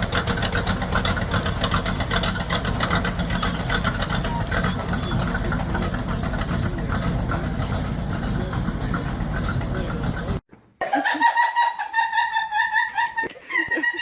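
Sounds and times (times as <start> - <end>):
vehicle engine running: 0.0 - 10.4.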